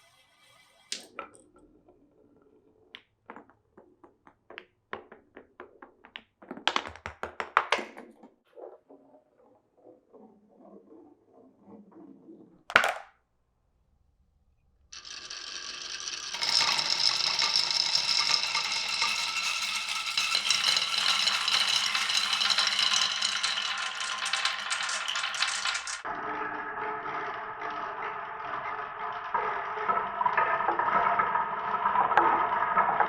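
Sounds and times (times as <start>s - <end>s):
marbles clattering along a track: 15.0s - 26.1s.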